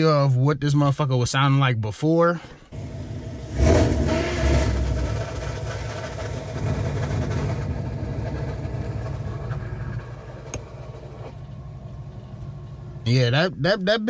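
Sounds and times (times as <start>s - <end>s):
car engine idling: 2.7s - 13.1s.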